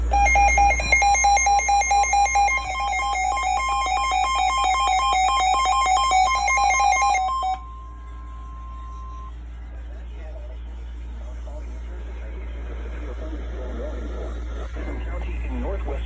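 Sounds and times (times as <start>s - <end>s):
harsh electronic data tones: 0.0s - 7.7s
steady single alert tone: 0.0s - 7.8s.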